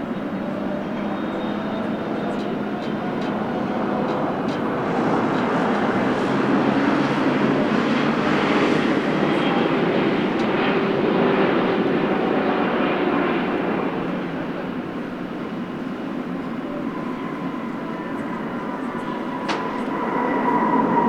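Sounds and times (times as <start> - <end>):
jet engine rushing: 4.3 - 21.0.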